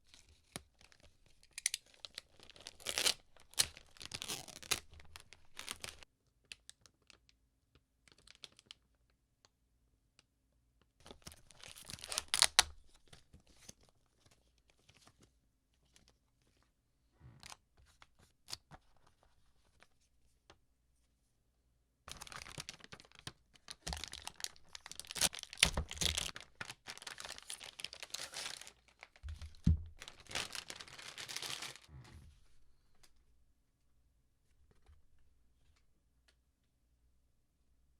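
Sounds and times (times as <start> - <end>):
packaging tearing and crinkling: 1.6 - 6.0, 11.1 - 12.8, 22.1 - 31.9.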